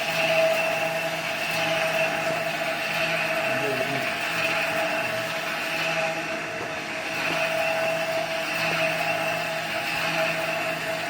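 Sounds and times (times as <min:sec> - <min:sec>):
machine humming with hiss: 0:00.0 - 0:11.0.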